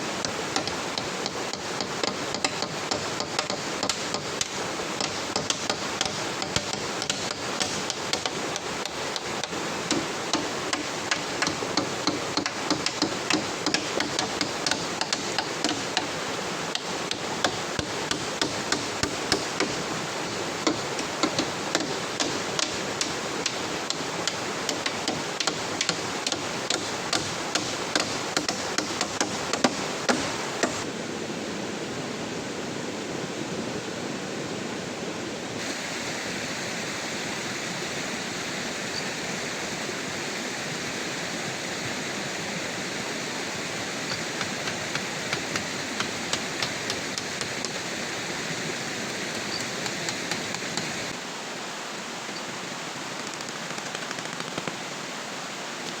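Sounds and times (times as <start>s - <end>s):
steady rushing hiss: 0.0s - 56.0s
hand tool knocking on wood: 0.2s - 19.8s, 20.6s - 30.8s.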